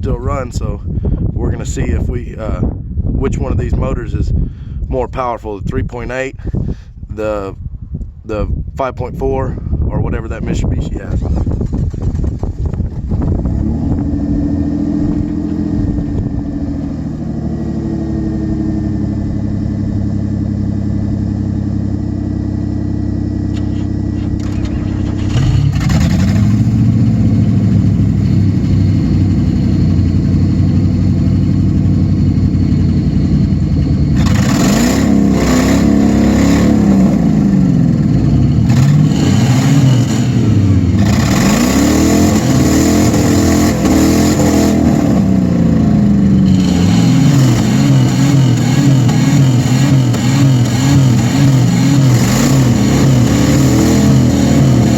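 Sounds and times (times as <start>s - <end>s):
car engines over-revving: 11.0s - 54.9s.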